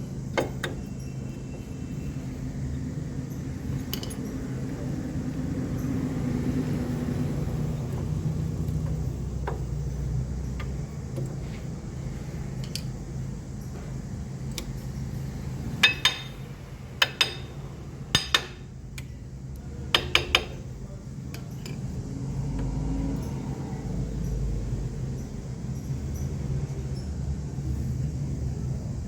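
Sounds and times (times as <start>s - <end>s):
metal tools clinking: 3.3s - 4.9s, 15.8s - 17.6s.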